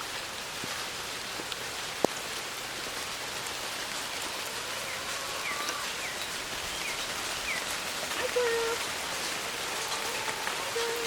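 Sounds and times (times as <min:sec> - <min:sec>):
steady rain falling: 0:00.0 - 0:11.0.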